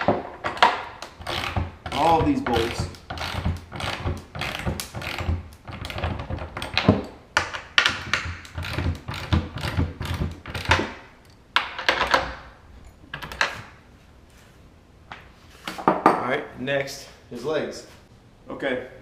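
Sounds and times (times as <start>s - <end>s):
hand ratchet clicking: 0.5s - 10.9s.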